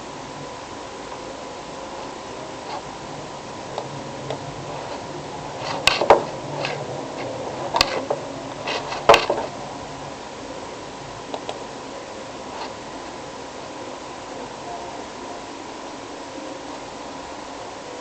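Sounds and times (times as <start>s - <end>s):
steady electrical hum: 0.0s - 18.0s
sharp clicks and clatters: 5.6s - 6.8s, 7.7s - 9.5s.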